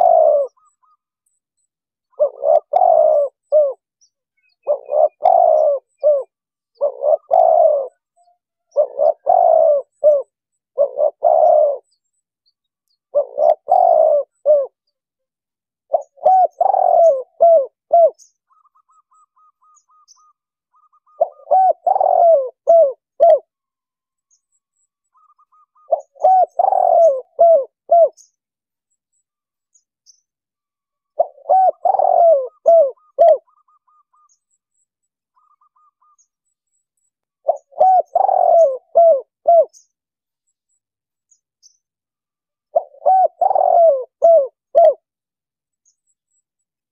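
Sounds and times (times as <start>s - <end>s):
dove cooing: 0.0s - 1.0s, 2.1s - 3.9s, 4.6s - 11.9s, 13.1s - 14.8s, 15.9s - 23.5s, 25.2s - 28.3s, 31.1s - 34.4s, 35.4s - 36.3s, 37.4s - 39.8s, 42.7s - 45.1s.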